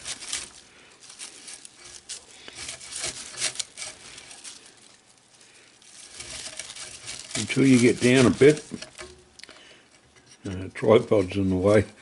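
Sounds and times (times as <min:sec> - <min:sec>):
tobacco leaf scraping and tearing: 0:00.0 - 0:11.8.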